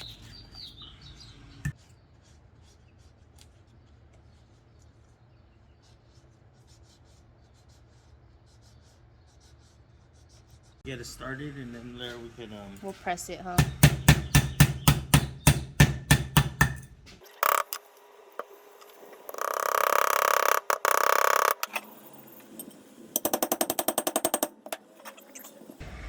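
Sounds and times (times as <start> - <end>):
hammer striking metal bearing: 13.6 - 17.8.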